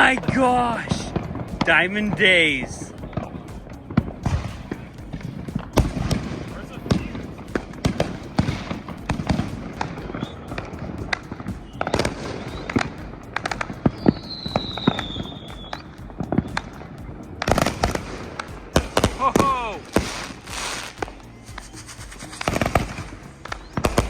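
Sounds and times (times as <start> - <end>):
fireworks bangs and crackles: 0.0 - 24.0
falling firework whistle: 12.0 - 15.9.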